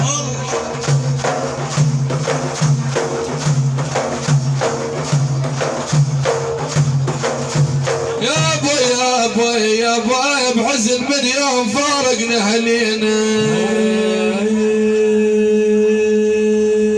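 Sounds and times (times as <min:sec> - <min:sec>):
person singing: 0:00.0 - 0:00.8
hand percussion beating: 0:00.0 - 0:11.0.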